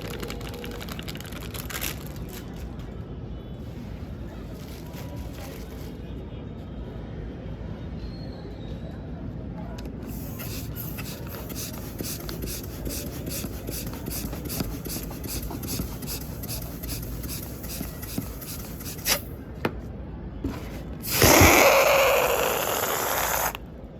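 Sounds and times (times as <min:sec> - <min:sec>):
hands rubbing plastic package: 0:00.0 - 0:02.6, 0:10.1 - 0:19.2.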